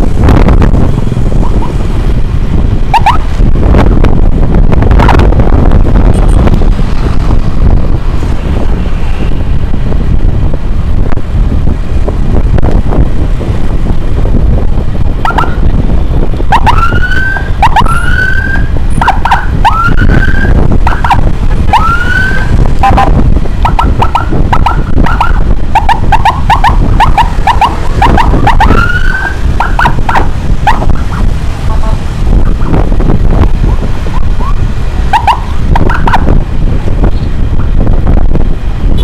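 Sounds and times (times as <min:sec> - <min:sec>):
wind and road rush: 0:00.0 - 0:39.0
electronic siren rising sweeps: 0:02.9 - 0:03.3, 0:15.2 - 0:15.6, 0:16.5 - 0:31.8.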